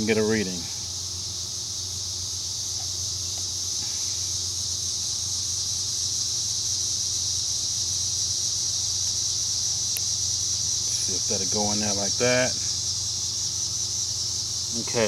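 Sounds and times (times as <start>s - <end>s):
insects buzzing: 0.0s - 15.0s
faint low hum: 7.6s - 15.0s.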